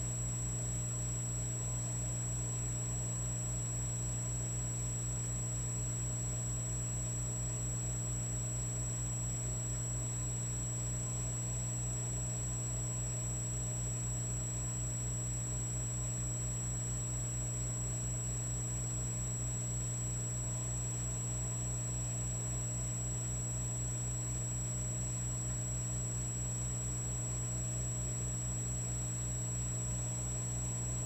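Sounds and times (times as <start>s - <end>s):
electric fireplace hum: 0.0s - 31.0s.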